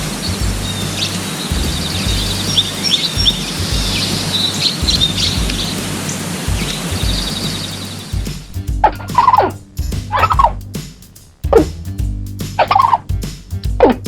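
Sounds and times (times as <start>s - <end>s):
low rumble: 0.0s - 14.0s
squirrel chattering: 0.2s - 8.2s, 8.8s - 10.6s, 12.6s - 13.1s.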